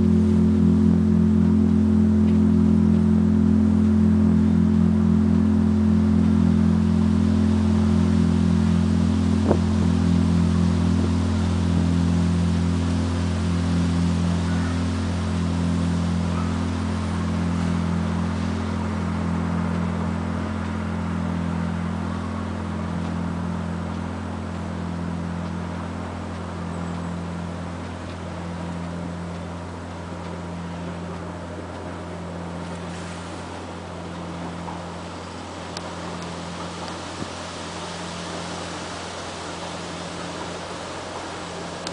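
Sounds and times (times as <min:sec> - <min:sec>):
church bell humming: 0:00.0 - 0:32.7.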